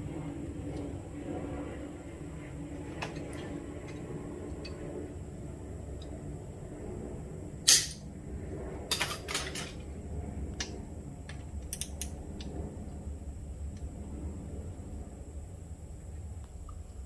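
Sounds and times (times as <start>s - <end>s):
low steady hum: 0.0s - 17.0s
metal parts clicking and knocking: 8.9s - 9.8s.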